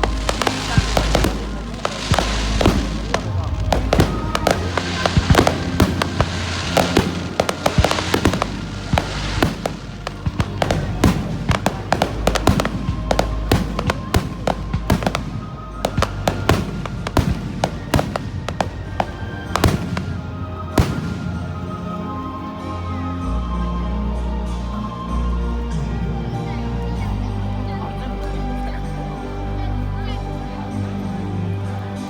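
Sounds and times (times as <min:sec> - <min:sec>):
fireworks popping and crackling: 0:00.0 - 0:22.0
music: 0:00.0 - 0:32.0.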